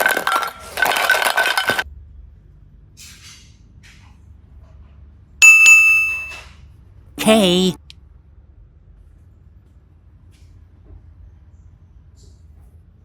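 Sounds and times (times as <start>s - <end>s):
bright bell-like chime: 5.4s - 6.4s
jingling: 5.4s - 6.4s.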